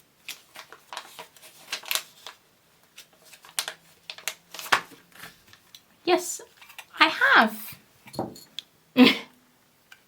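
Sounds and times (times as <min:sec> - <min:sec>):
paper pages rustling: 0:00.2 - 0:05.7.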